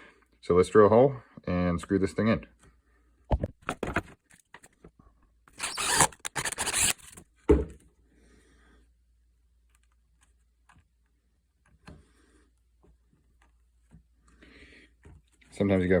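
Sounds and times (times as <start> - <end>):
drill boring into wood: 5.5 - 7.2.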